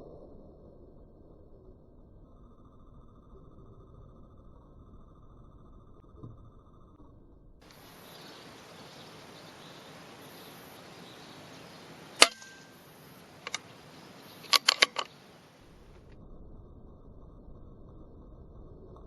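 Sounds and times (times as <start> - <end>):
steady outdoor hiss: 7.6 - 19.0
rifle shot: 12.0 - 16.0
clicks: 12.1 - 16.2.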